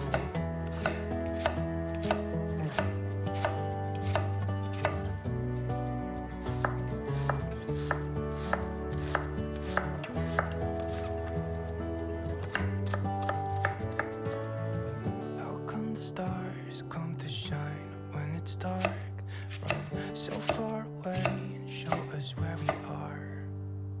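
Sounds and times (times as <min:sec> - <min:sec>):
knife chopping on cutting board: 0:00.0 - 0:05.0, 0:06.5 - 0:11.1, 0:12.4 - 0:14.1, 0:18.8 - 0:22.9
instrumental background music: 0:00.0 - 0:24.0.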